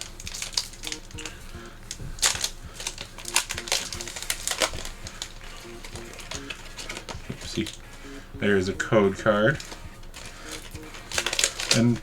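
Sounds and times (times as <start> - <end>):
foil pack tearing and crinkling: 0.0 - 1.3, 2.2 - 7.8, 9.5 - 12.0.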